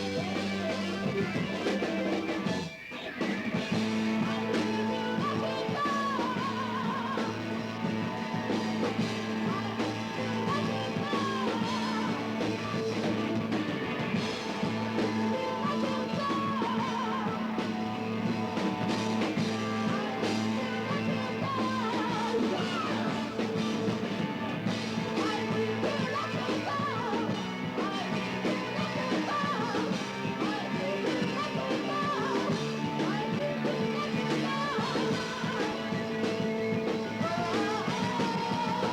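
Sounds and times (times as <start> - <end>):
live rock band playing: 0.0 - 38.9.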